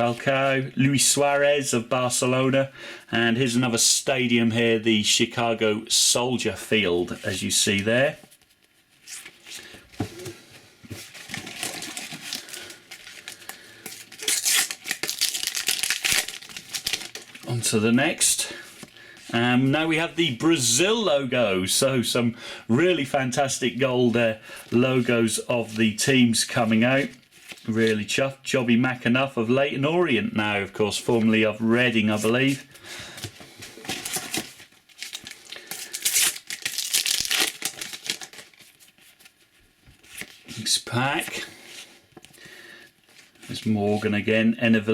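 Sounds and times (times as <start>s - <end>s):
wrappers rustling and crinkling: 8.3s - 17.8s, 33.5s - 41.9s.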